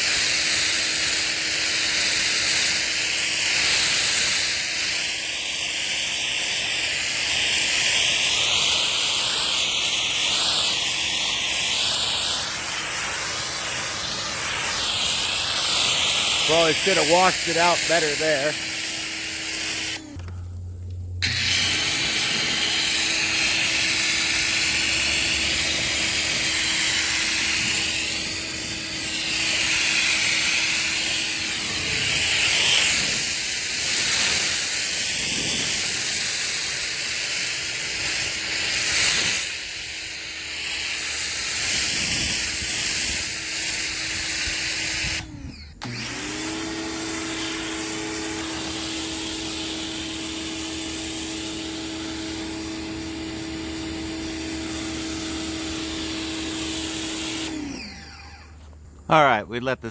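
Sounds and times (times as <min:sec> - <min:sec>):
water jet hissing: 0:00.0 - 0:20.3, 0:21.2 - 0:59.8
pressure washer motor whine: 0:00.0 - 0:59.4.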